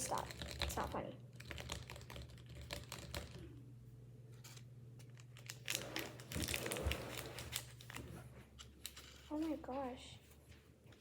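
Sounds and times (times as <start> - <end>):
plastic packets crinkling: 5.2 - 8.1.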